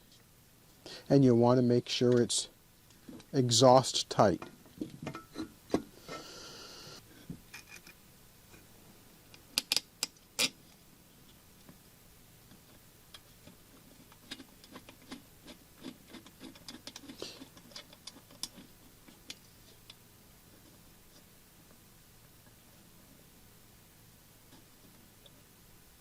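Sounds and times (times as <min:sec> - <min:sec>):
small metal parts clicking: 0:14.2 - 0:18.6.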